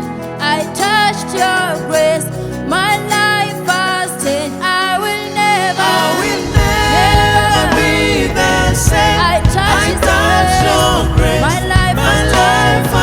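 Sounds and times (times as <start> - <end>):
music with singing: 0.0 - 13.0
heavy bass: 5.8 - 13.0.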